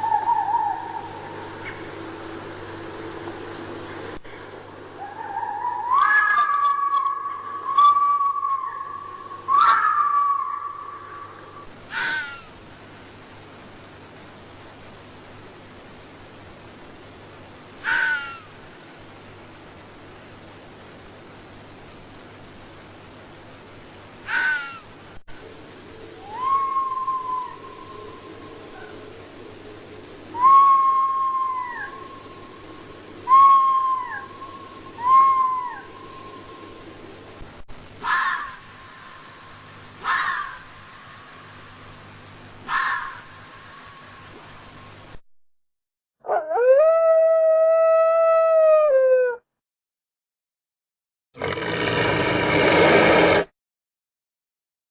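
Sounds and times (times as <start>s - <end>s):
high-pitched animal calls: 0.0s - 1.9s, 5.0s - 12.6s, 17.8s - 18.6s, 24.3s - 24.9s, 30.8s - 32.5s, 33.3s - 36.6s, 38.0s - 38.8s, 40.0s - 40.7s, 42.7s - 43.4s
background hiss: 0.0s - 45.2s, 51.4s - 53.5s
animal yelp: 5.0s - 11.3s, 11.9s - 12.5s, 17.8s - 18.5s, 24.3s - 24.9s, 38.0s - 38.7s, 40.0s - 40.7s, 42.7s - 43.3s
faint steady tone: 24.8s - 37.6s.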